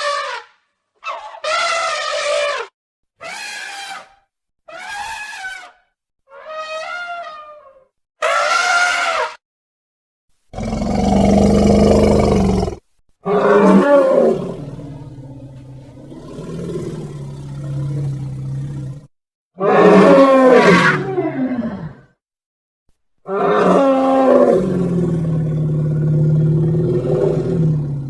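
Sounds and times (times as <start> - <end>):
elephant trumpeting: 0.0 - 4.1, 4.7 - 7.6, 8.2 - 9.4
elephant roar: 10.6 - 22.0, 23.3 - 28.0.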